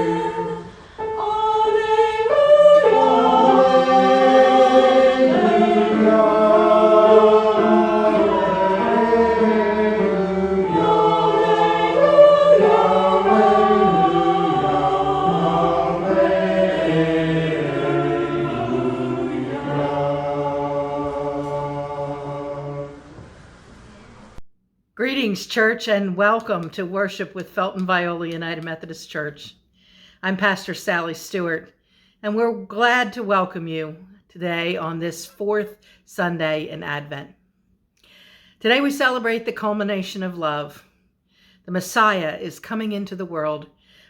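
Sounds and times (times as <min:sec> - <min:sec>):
choir singing held chords: 0:00.0 - 0:24.4.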